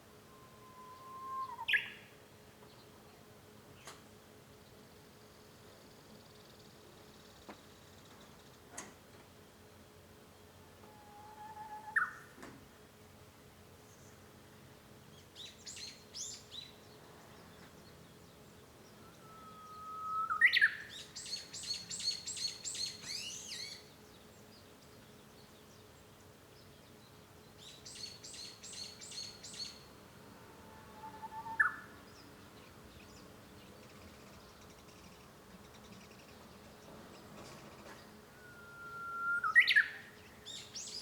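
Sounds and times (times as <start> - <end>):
bird whistling song: 0.2 - 2.1, 10.9 - 12.3, 18.9 - 23.8, 27.6 - 29.9, 30.6 - 32.3, 38.1 - 41.0.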